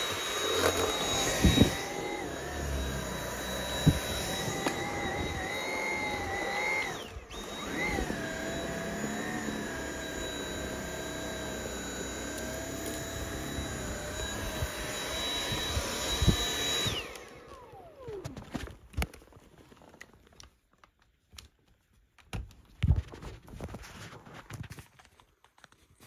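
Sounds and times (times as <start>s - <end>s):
vacuum cleaner motor whine: 0.0s - 19.1s.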